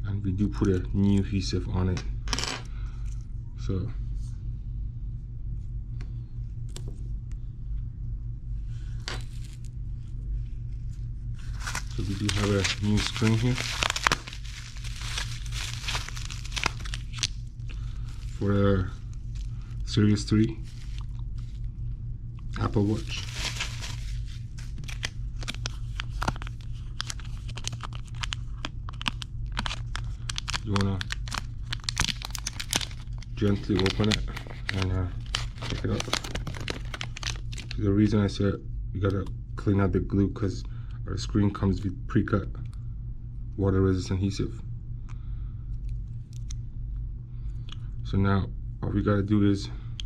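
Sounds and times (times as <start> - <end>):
steady low hum: 0.0 - 50.0
plastic packaging crinkling: 11.4 - 21.7, 22.5 - 37.8.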